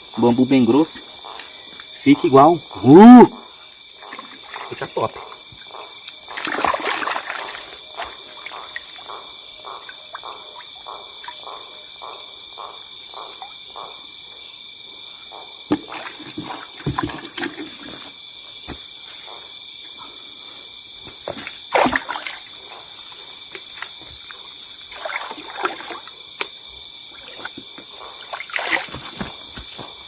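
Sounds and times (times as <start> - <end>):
night insects chorus: 0.0 - 30.0
water splashing and trickling: 4.0 - 11.4, 15.7 - 18.1, 21.1 - 26.5, 27.1 - 29.6.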